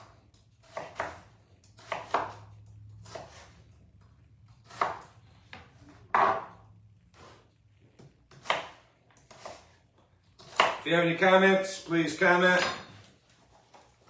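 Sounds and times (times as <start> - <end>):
knife chopping on cutting board: 0.0 - 3.6, 4.6 - 7.4, 8.0 - 9.8, 10.4 - 10.8.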